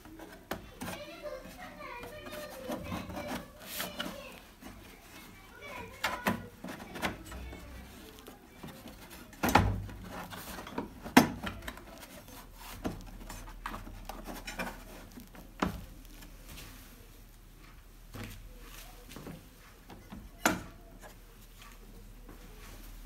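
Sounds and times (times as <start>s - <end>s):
light rubbing: 0.0s - 16.5s
plastic cover knocks and clicks: 9.4s - 11.8s.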